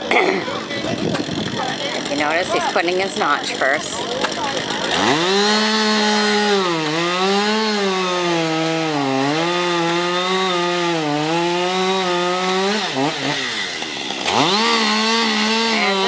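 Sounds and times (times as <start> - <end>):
chainsaw cutting wood: 0.0 - 16.0.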